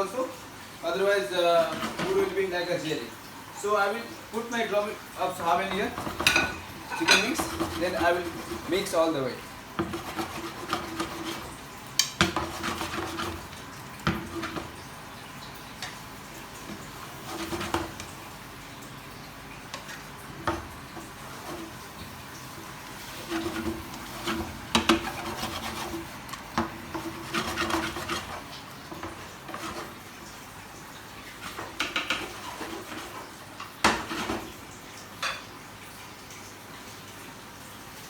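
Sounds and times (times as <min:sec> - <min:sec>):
spatula scraping a pan: 0:01.5 - 0:02.4, 0:05.6 - 0:09.0, 0:09.8 - 0:14.8, 0:16.7 - 0:18.1, 0:20.5 - 0:22.0, 0:22.9 - 0:30.0, 0:31.4 - 0:34.6.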